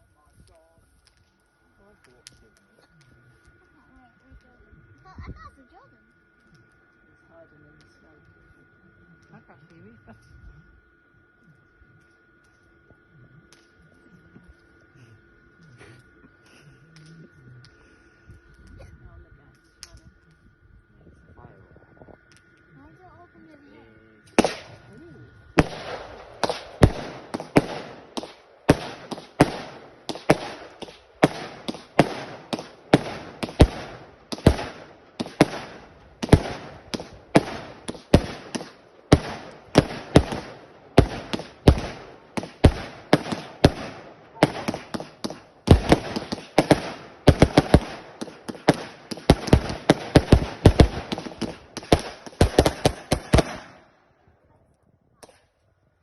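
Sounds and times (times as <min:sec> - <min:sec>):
firework barrage bangs: 0:24.3 - 0:53.8.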